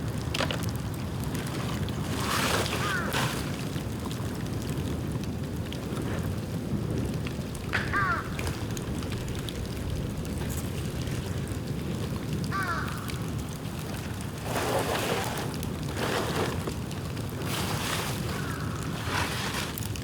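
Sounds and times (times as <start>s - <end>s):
fire crackling and popping: 0.0s - 20.0s
fire flame rushing: 13.8s - 20.0s.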